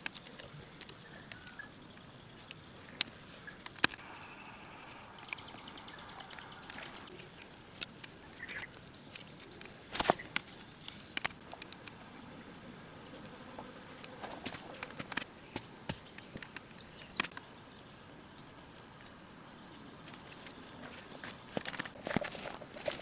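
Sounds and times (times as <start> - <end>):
faint outdoor background: 0.0 - 23.0
bird chirps: 0.3 - 2.4, 3.3 - 9.6, 15.8 - 17.3.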